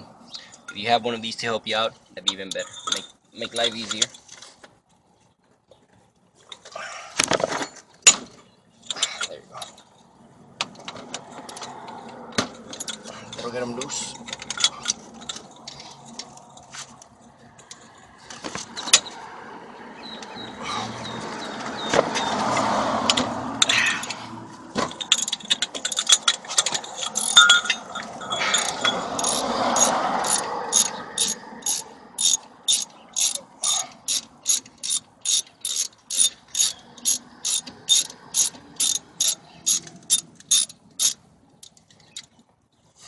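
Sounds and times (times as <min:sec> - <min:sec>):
ratchet wrench clicking: 0:25.0 - 0:41.2.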